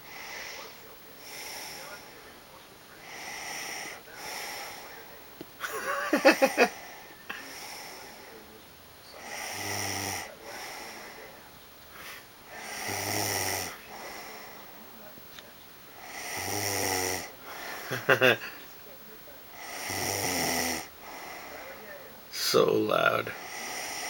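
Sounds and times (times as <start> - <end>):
woman snoring: 9.2 - 11.0, 12.6 - 14.2, 16.0 - 17.3, 19.6 - 21.3, 23.4 - 24.0.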